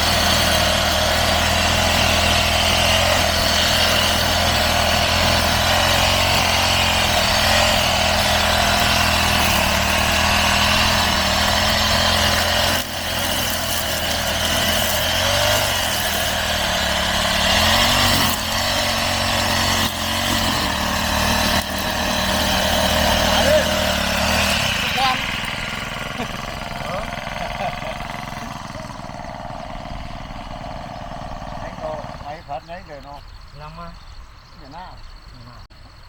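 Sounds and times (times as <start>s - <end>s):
brush cutter engine cutting grass: 0.0s - 33.2s.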